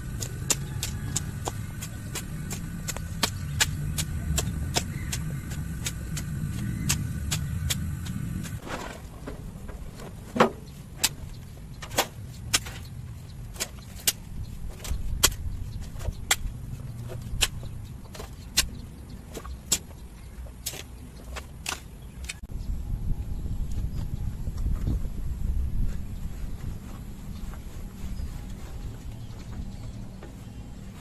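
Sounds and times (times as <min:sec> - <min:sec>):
hand tool striking ground: 0:00.0 - 0:09.0, 0:10.4 - 0:22.5
low rumble: 0:00.0 - 0:10.2, 0:22.4 - 0:31.0.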